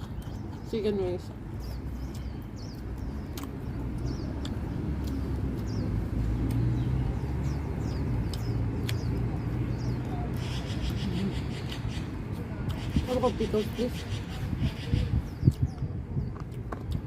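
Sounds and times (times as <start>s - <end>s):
small birds chirping: 0.0s - 17.0s
sharp clicks: 2.0s - 5.8s.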